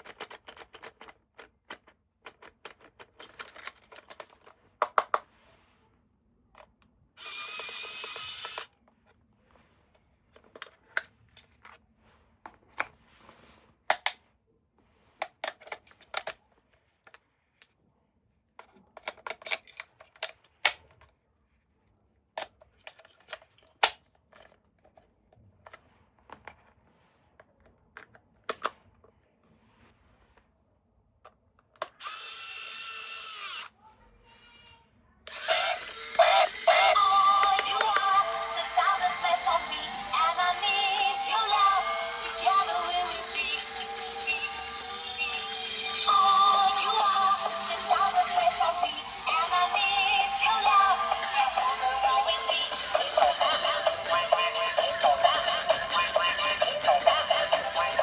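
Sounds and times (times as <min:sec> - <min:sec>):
plastic parts clicking and knocking: 0:00.0 - 0:05.3, 0:15.2 - 0:16.4, 0:18.6 - 0:21.1, 0:22.4 - 0:26.6
small electric motor running: 0:07.2 - 0:08.7, 0:32.0 - 0:33.7, 0:35.3 - 0:58.0.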